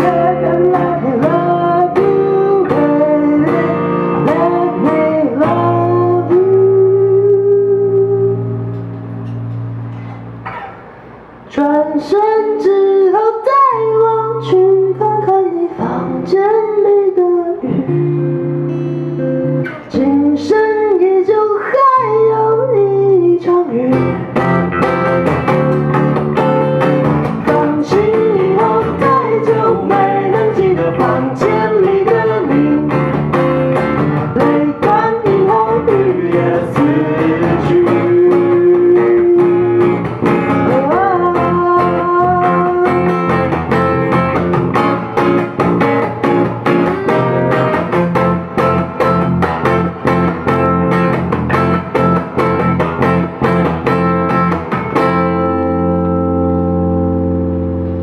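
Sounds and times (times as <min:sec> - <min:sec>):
person singing a ballad: 0:00.0 - 0:08.8, 0:11.5 - 0:18.9, 0:19.6 - 0:24.5, 0:27.2 - 0:43.6
acoustic guitar chords: 0:00.0 - 0:58.0.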